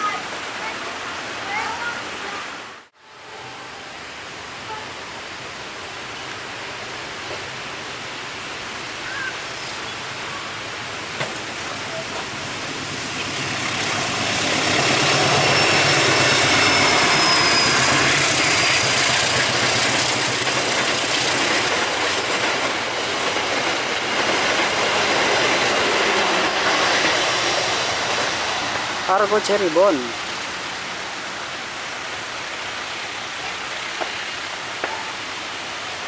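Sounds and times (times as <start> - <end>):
train passing at speed: 3.0 - 36.0
high wheel squeal: 11.4 - 21.3.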